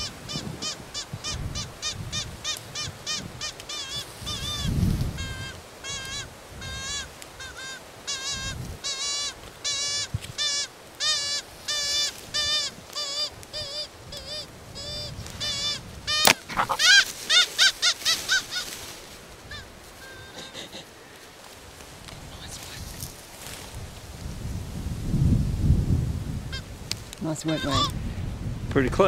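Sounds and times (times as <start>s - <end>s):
fox whistle squealing distress cries: 0.6s - 18.7s, 27.4s - 27.9s
sharp snap: 16.2s - 16.6s.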